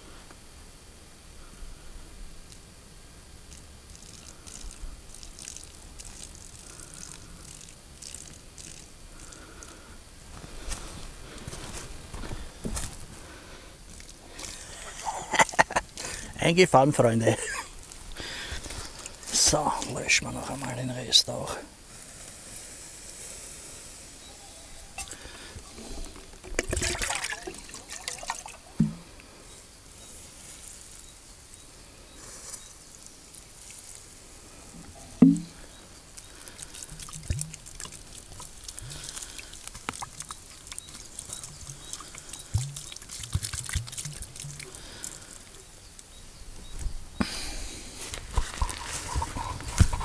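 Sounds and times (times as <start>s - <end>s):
water poured on campfire: 3.5s - 13.2s, 13.9s - 20.7s, 25.0s - 28.9s, 33.3s - 34.2s, 35.4s - 45.6s
knocks: 35.2s - 35.5s
loud thump: 35.2s - 35.6s.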